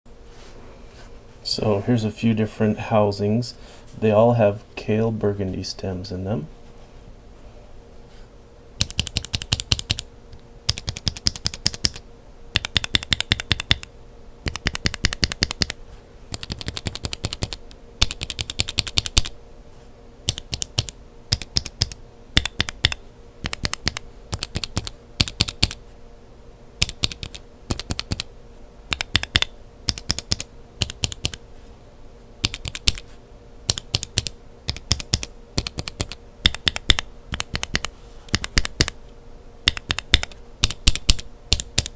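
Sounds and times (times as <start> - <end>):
mechanical keyboard switches clacking: 8.8 - 10.0, 10.7 - 12.0, 12.6 - 13.9, 14.5 - 19.3, 28.9 - 31.4, 32.4 - 33.0, 33.7 - 39.0, 39.7 - 41.9.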